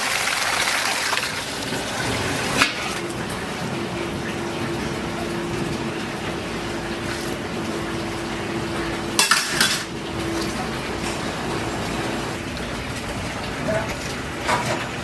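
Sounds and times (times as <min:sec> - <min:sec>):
dishes and utensils clattering: 0:08.8 - 0:12.4, 0:13.6 - 0:15.0.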